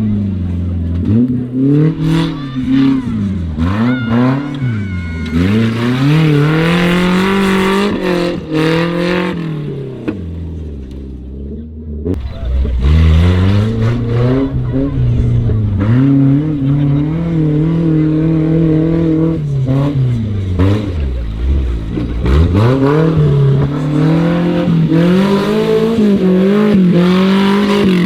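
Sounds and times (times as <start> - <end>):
off-road vehicle engine revving: 0.0 - 28.0.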